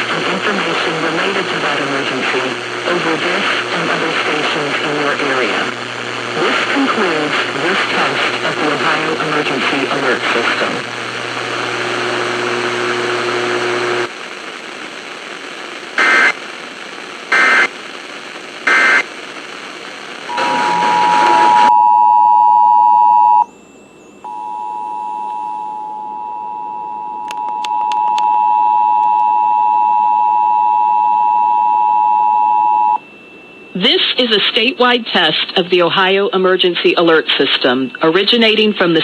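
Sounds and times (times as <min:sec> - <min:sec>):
radio hiss: 0:00.0 - 0:21.7, 0:33.5 - 0:39.0
two-tone attention signal: 0:20.3 - 0:28.3.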